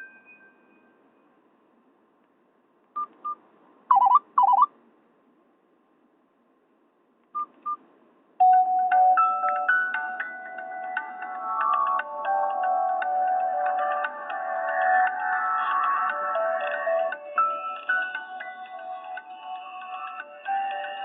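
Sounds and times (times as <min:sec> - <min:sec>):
short electronic phone beeps: 0:03.0 - 0:04.7, 0:07.4 - 0:07.8
electronic ringtone melody: 0:03.9 - 0:04.7, 0:08.4 - 0:21.0.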